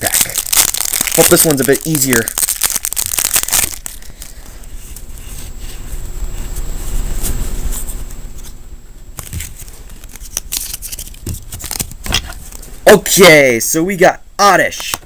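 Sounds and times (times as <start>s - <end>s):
foil wrapper rustling: 0.0s - 5.6s, 9.2s - 12.6s.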